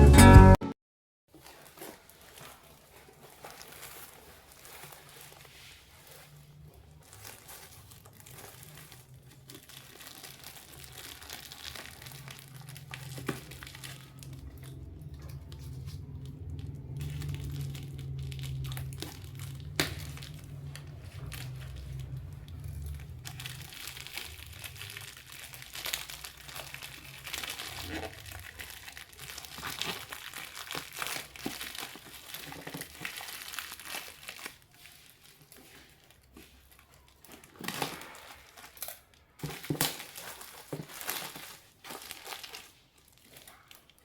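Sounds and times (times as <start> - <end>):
packaging crinkling and tearing: 1.3 - 44.0.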